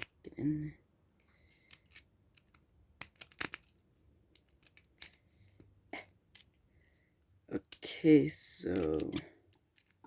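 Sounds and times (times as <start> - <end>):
lock pick clicking and scraping: 1.2 - 7.8, 8.7 - 10.0.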